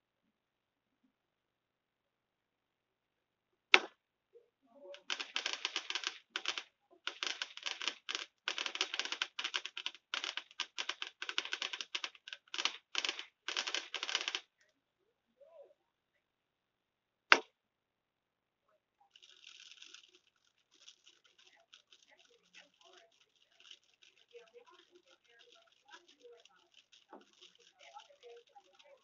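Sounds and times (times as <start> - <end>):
firework crackling: 5.0 - 14.4, 19.1 - 29.0.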